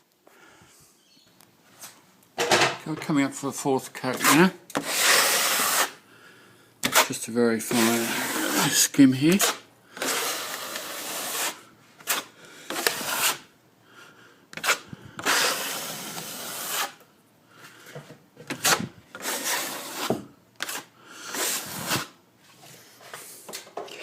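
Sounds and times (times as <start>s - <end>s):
trowel scraping across ceiling: 4.0s - 6.0s, 6.8s - 13.5s, 14.6s - 17.0s, 18.4s - 24.0s.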